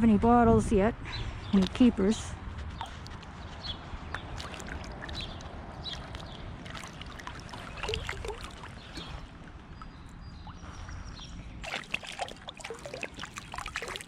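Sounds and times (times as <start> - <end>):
water splashing while wading: 4.0 - 9.7, 11.6 - 14.0.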